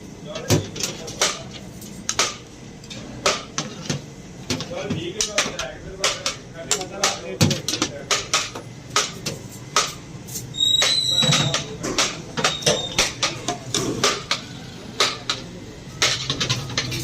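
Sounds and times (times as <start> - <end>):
utensils clanking on pots: 0.3 - 17.0
brief high squeal: 10.5 - 11.4.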